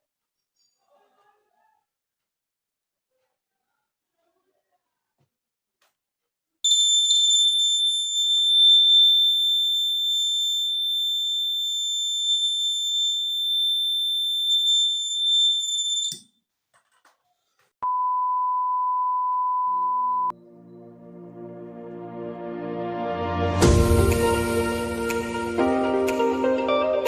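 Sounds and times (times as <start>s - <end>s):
high-pitched buzzer tone: 6.7s - 16.2s.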